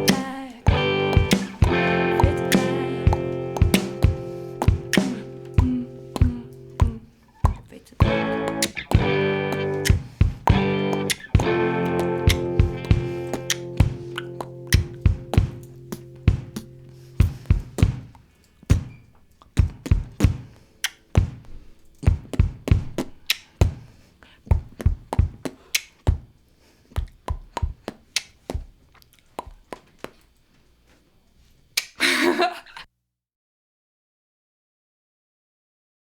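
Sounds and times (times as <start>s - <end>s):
sharp knocks and thuds: 18.7s - 20.6s, 21.2s - 23.9s.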